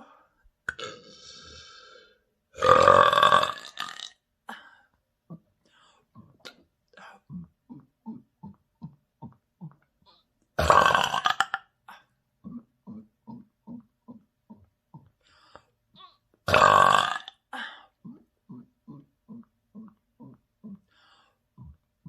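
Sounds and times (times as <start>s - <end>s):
person burping: 0.7s - 1.8s, 2.6s - 4.6s, 6.2s - 15.2s, 16.0s - 20.9s.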